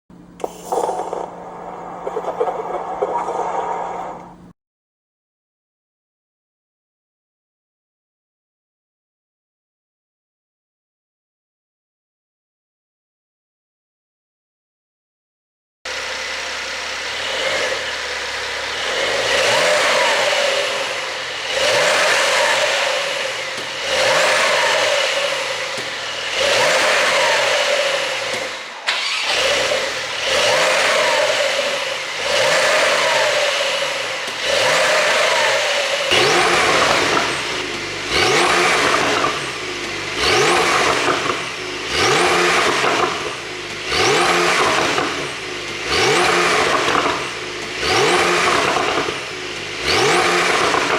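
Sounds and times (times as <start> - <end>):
car engine revving: 15.9 - 50.9
exhaust popping and crackling: 20.8 - 50.9.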